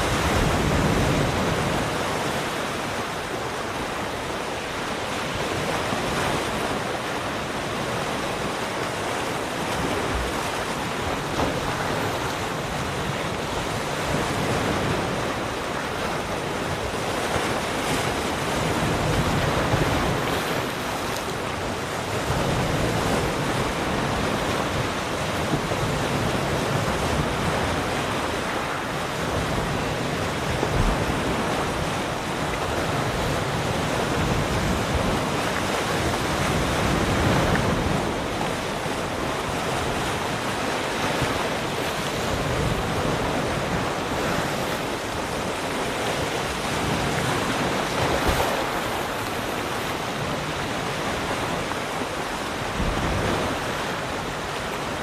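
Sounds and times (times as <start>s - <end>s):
ocean waves breaking on shore: 0.0s - 55.0s.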